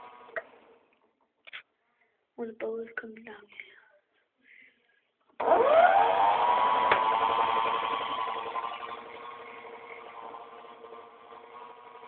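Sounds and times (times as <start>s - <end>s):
small electric motor whining: 5.4s - 12.0s.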